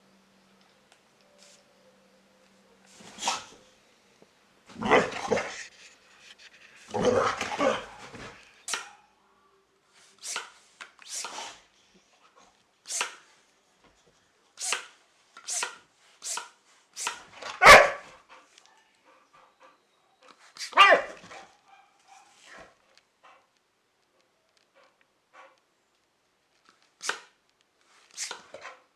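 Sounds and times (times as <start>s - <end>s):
dog barking: 7.2s - 9.2s, 17.5s - 18.1s, 20.7s - 22.7s.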